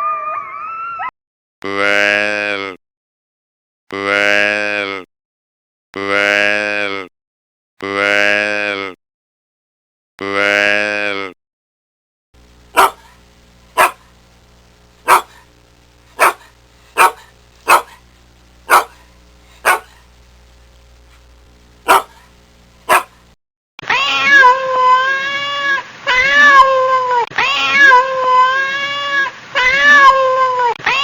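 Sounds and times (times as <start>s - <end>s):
steady low hum: 12.4s - 23.4s
cat meowing: 12.8s - 13.1s, 15.1s - 15.4s, 16.2s - 18.0s, 18.7s - 19.0s, 19.6s - 19.9s, 21.9s - 22.2s, 23.9s - 31.0s.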